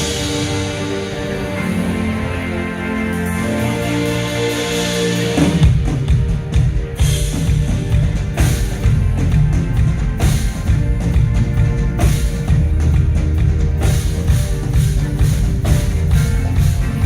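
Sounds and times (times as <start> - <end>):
drums and bass: 0.0 - 17.0
rock band playing: 0.0 - 17.0.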